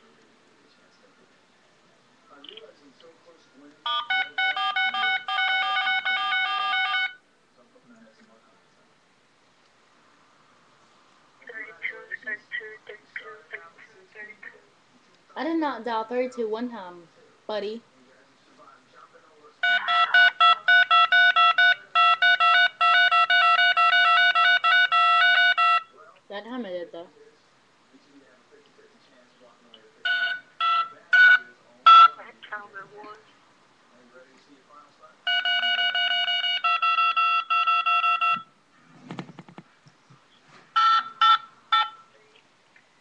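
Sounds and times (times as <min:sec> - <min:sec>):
phone keypad beeps: 0:35.3 - 0:38.5.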